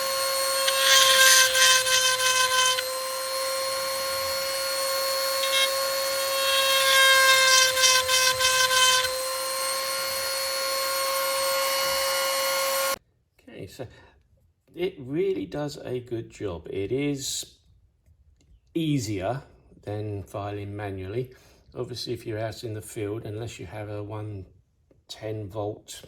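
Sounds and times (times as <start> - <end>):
grinding stone rasping on chain: 0.0 - 13.0
rotary tool whining: 0.0 - 13.0.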